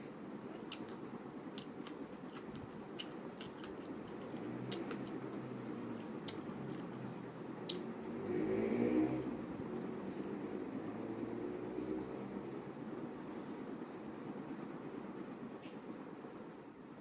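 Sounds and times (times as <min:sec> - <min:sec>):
person chewing food: 0:00.5 - 0:07.8.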